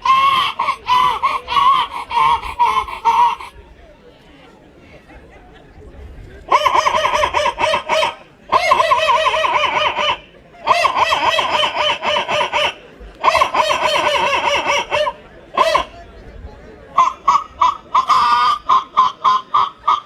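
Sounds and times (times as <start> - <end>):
boy imitating chicken calls: 0.0 - 3.5.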